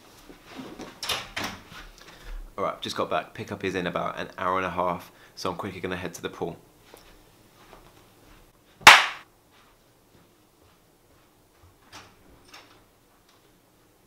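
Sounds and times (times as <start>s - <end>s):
sharp bang: 8.8s - 9.2s.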